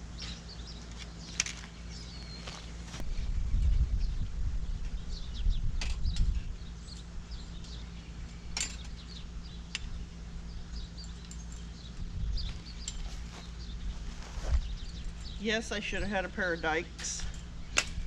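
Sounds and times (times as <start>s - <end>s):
wind buffeting microphone: 3.0s - 7.8s, 11.8s - 16.3s.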